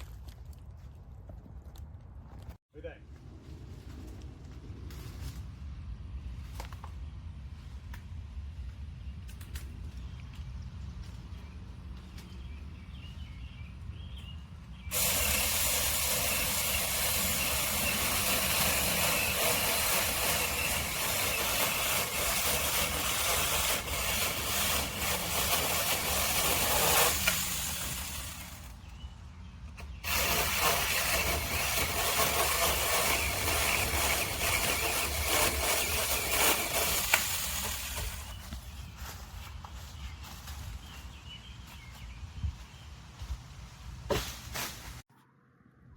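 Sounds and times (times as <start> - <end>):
electric mini chainsaw running: 14.9 - 28.7, 30.0 - 38.3.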